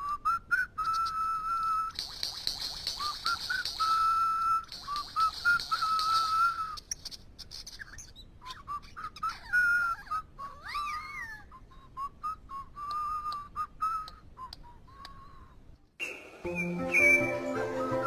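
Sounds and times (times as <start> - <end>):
bird whistling: 2.7 - 6.8, 16.0 - 18.0.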